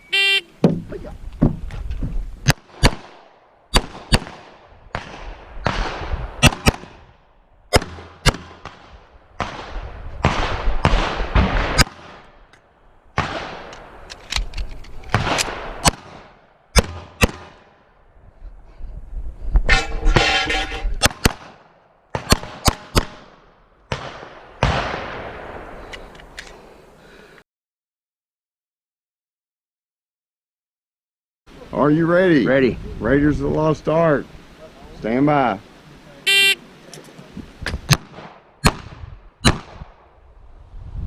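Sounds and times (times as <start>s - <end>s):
pistol shots: 2.5s - 7.0s, 7.7s - 12.2s, 21.0s - 23.3s, 37.9s - 40.0s.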